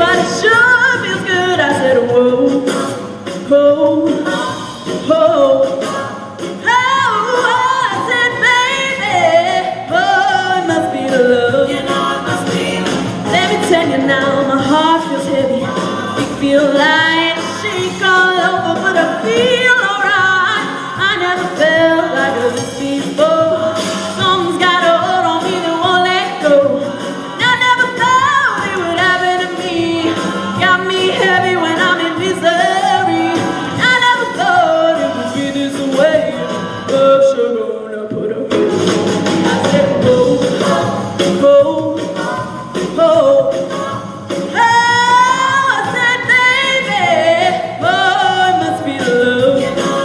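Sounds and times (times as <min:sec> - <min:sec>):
women singing together: 0:00.0 - 0:50.0.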